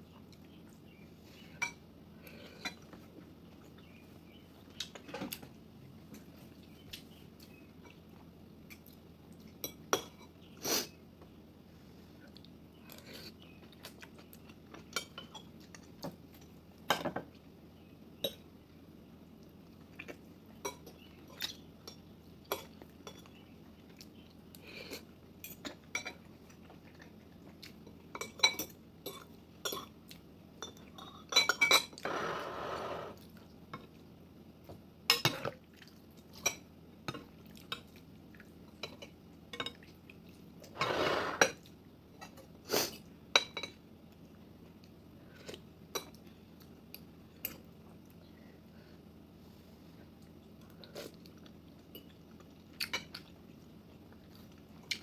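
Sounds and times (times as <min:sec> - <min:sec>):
utensils clinking against a dish: 0:20.7 - 0:23.4.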